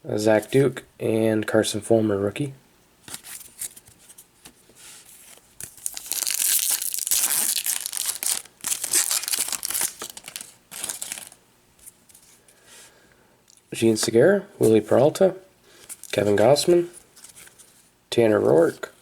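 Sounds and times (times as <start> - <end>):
wrapper tearing and crinkling: 5.6 - 11.4.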